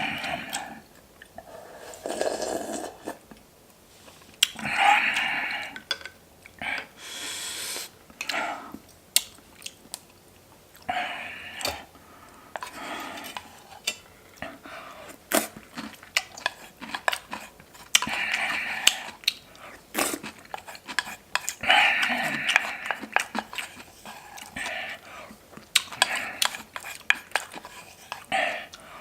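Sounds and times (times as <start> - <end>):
person chewing: 0.0 - 3.4, 8.2 - 11.0, 12.6 - 28.9.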